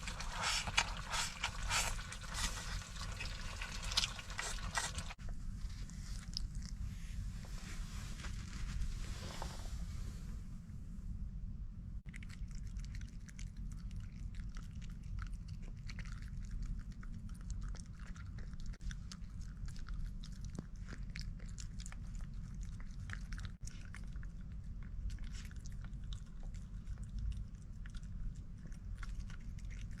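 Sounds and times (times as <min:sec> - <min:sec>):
person chewing and eating: 0:00.0 - 0:05.2, 0:12.0 - 0:30.0
steady low hum: 0:00.0 - 0:30.0.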